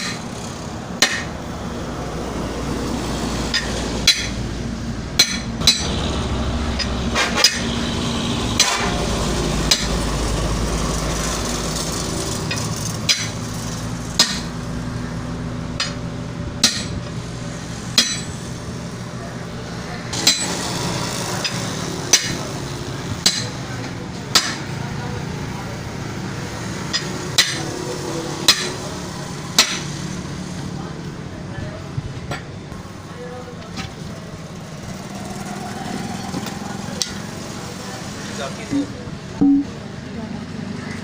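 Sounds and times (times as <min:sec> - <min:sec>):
hammer striking tyre: 0:00.0 - 0:00.3, 0:01.0 - 0:01.4, 0:03.5 - 0:04.5, 0:05.1 - 0:06.0, 0:06.7 - 0:07.8, 0:08.5 - 0:09.0, 0:09.6 - 0:10.0, 0:12.5 - 0:13.4, 0:14.2 - 0:14.6, 0:15.8 - 0:16.0, 0:16.6 - 0:17.1, 0:17.9 - 0:18.4, 0:20.2 - 0:20.7, 0:21.4 - 0:22.5, 0:23.2 - 0:23.6, 0:24.3 - 0:24.7, 0:26.9 - 0:27.7, 0:28.5 - 0:28.8, 0:29.5 - 0:29.9, 0:38.7 - 0:39.8.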